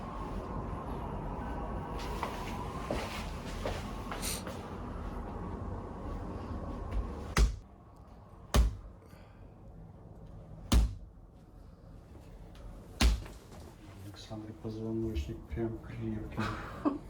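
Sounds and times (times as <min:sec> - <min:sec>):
mallet knocking on a back: 0:10.7 - 0:11.0.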